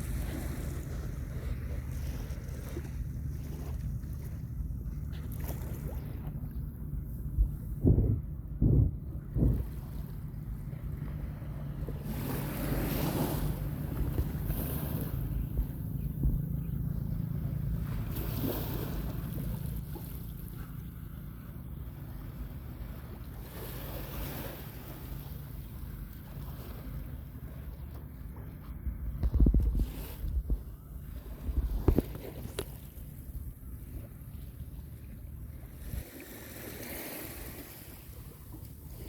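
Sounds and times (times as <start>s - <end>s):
steady low rumble: 0.0s - 23.4s
small sea waves washing in: 17.8s - 20.4s, 35.0s - 39.0s.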